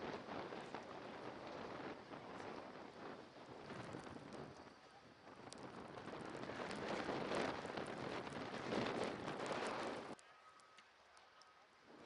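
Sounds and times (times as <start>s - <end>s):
blizzard wind blowing: 0.0s - 10.2s.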